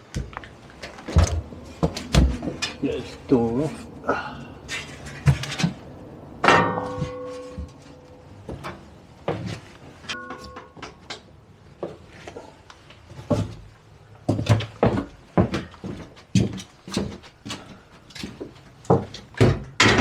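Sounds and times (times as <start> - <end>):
knocks and clunks: 0.0 - 11.2, 16.4 - 20.0
loud ringing metal clang: 6.4 - 8.3, 10.1 - 11.1.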